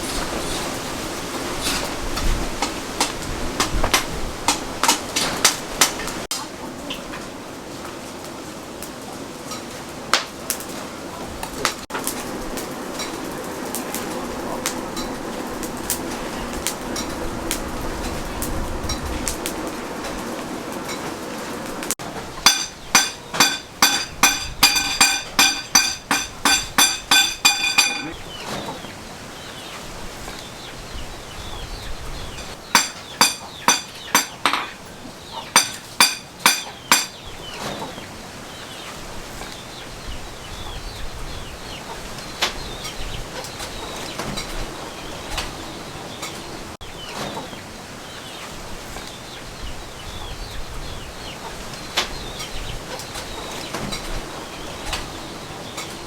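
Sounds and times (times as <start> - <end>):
hammer striking steel: 22.4 - 28.2, 32.7 - 34.8, 35.5 - 37.2.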